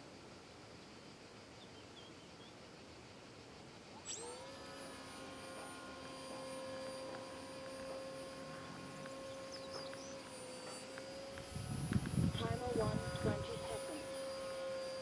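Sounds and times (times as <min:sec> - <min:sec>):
electric motor whining: 0:04.0 - 0:15.0.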